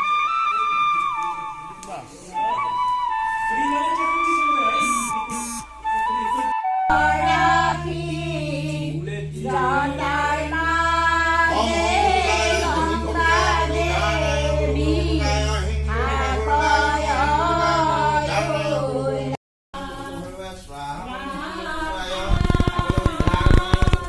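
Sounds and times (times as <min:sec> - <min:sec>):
low drone: 0:03.5 - 0:19.4
person singing devotional chant: 0:06.9 - 0:24.0.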